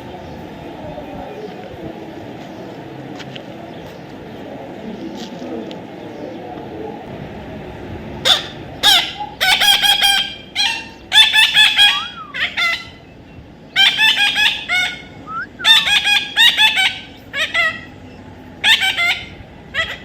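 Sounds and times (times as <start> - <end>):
parrot squawking: 8.2 - 13.0, 13.8 - 18.0, 18.6 - 20.0.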